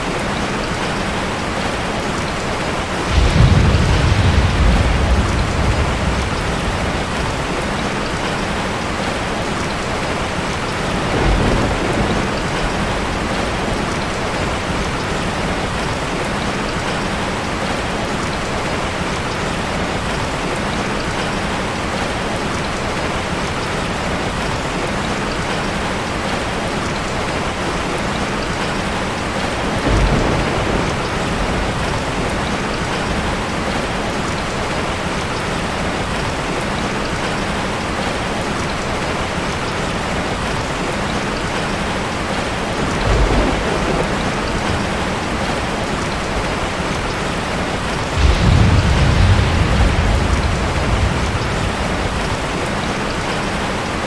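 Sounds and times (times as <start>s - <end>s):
heavy rain: 0.0s - 54.0s
rolling thunder: 2.5s - 16.5s, 29.2s - 34.1s, 42.2s - 54.0s.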